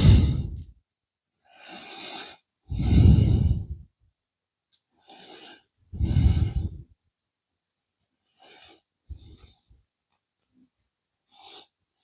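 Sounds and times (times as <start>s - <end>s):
person breathing into microphone: 0.0s - 0.7s, 1.7s - 3.9s, 5.1s - 6.9s.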